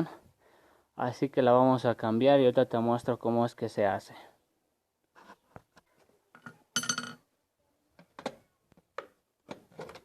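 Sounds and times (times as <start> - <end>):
metal tools clinking: 6.4 - 7.2.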